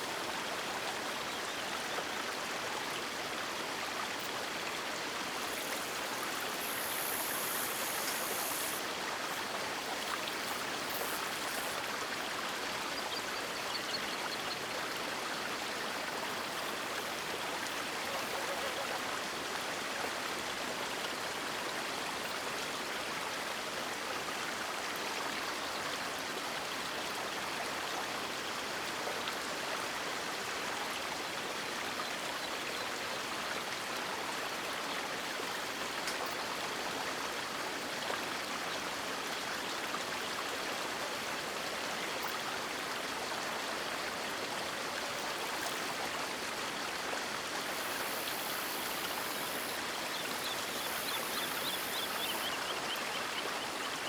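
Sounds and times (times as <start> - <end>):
river water running over rocks: 0.0 - 22.8, 35.3 - 54.0.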